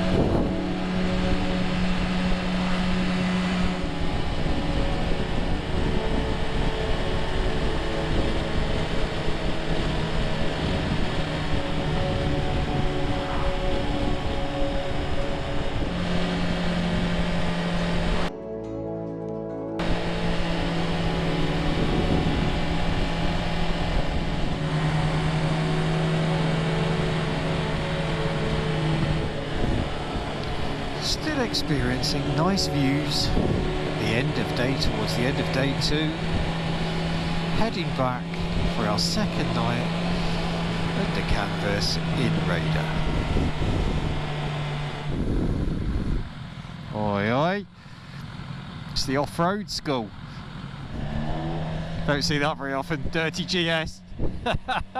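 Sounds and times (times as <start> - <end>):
motorcycle engine running: 0.0 - 18.3, 19.8 - 54.9
wind noise: 0.0 - 18.3, 19.8 - 25.8, 27.8 - 31.6, 32.3 - 35.5, 36.2 - 46.5, 53.8 - 54.9.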